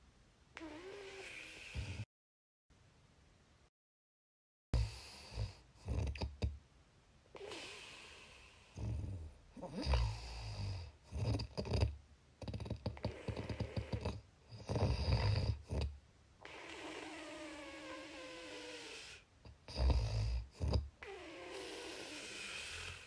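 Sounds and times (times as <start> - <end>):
person snoring: 0.6 - 2.1, 7.4 - 23.0.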